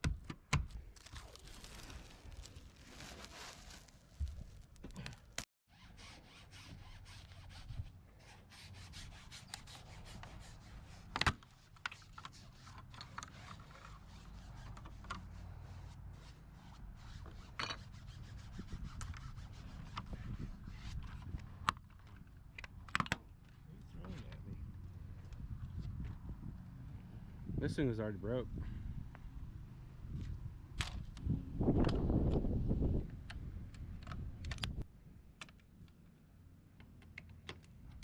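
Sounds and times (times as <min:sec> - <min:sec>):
plastic trim rubbing and scraping: 0:08.9 - 0:15.4.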